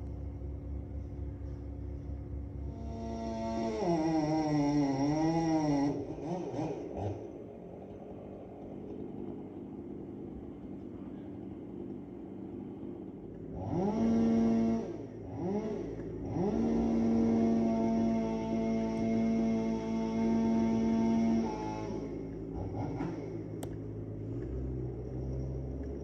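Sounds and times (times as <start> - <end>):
small engine revving: 2.7 - 7.4, 13.5 - 26.0.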